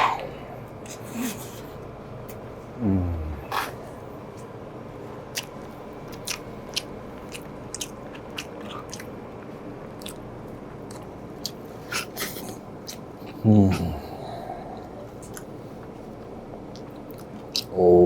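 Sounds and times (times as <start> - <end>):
low room hum: 0.0 - 18.0
chewing with crunchy bites: 5.3 - 13.4, 14.7 - 17.8.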